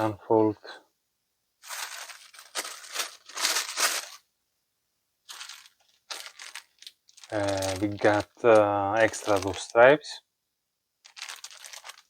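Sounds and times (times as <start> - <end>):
shirt rustling and crinkling: 1.6 - 4.2, 5.3 - 9.8, 11.0 - 12.0.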